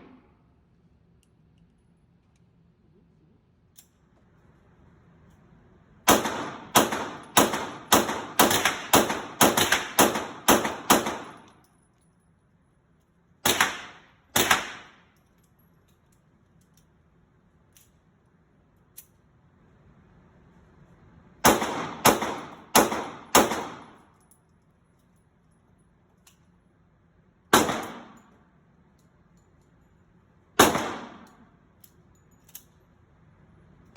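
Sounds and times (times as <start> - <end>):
gunshots with ringing tail: 6.1 - 11.5, 21.4 - 24.0, 27.5 - 28.2, 30.6 - 31.4.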